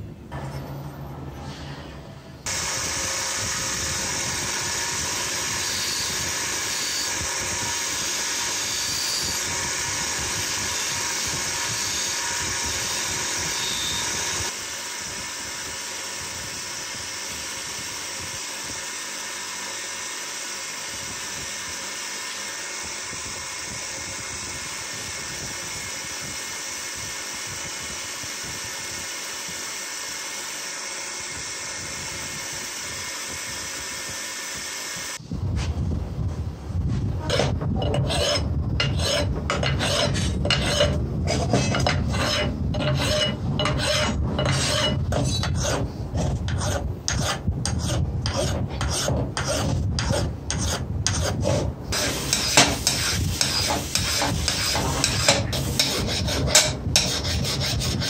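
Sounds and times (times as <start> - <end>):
small motor whirring whine: 2.4 - 35.3.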